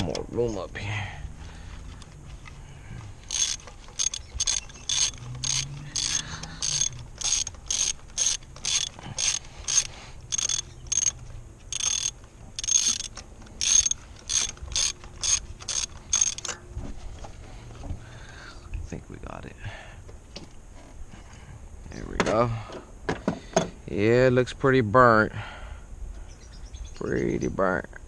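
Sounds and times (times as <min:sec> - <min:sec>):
ratchet wrench clicking: 0:03.2 - 0:16.6.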